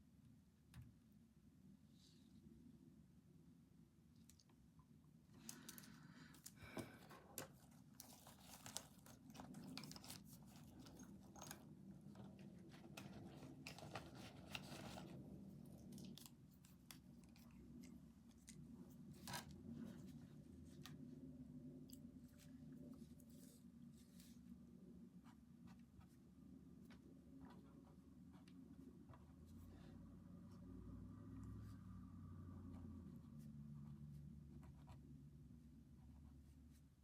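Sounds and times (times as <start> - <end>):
paper and stationery handled: 5.4 - 21.1.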